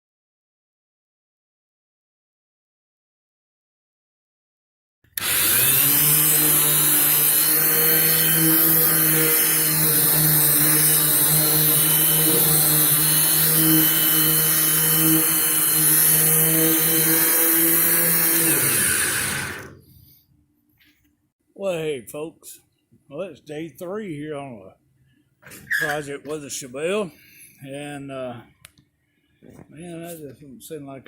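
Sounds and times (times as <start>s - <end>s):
power sander on metal: 5.2s - 19.8s.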